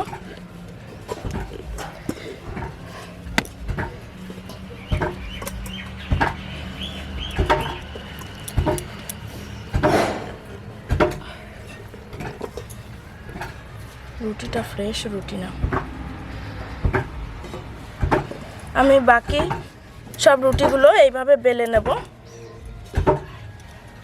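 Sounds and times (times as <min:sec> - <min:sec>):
bird calling: 0:01.9 - 0:11.5.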